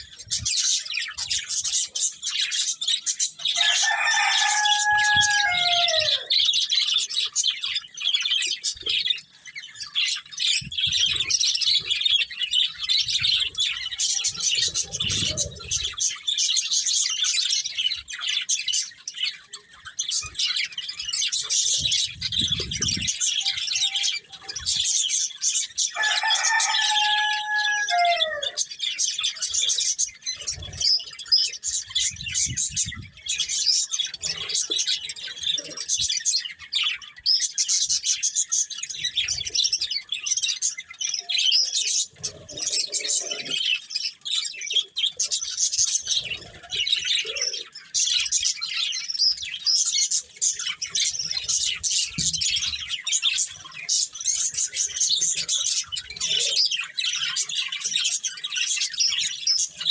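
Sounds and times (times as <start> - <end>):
budgerigars chattering and chirping: 0.0 - 59.9.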